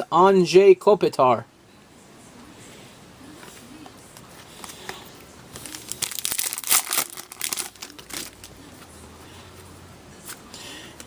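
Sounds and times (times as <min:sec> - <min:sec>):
foil wrapper crinkling and tearing: 0:05.6 - 0:08.5.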